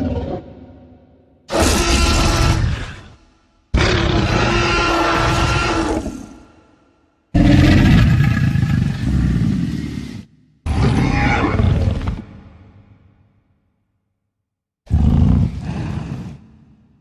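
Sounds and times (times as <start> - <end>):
dinosaur roaring: 0.0 - 0.8, 1.5 - 3.2, 3.8 - 6.4, 7.4 - 12.3.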